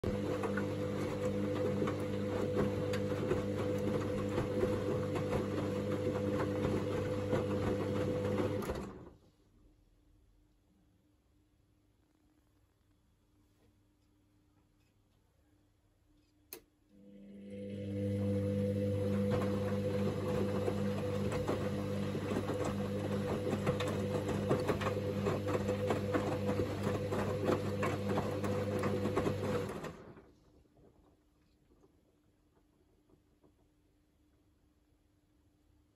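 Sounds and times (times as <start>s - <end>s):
washing machine motor humming: 0.0s - 9.1s, 16.9s - 30.3s.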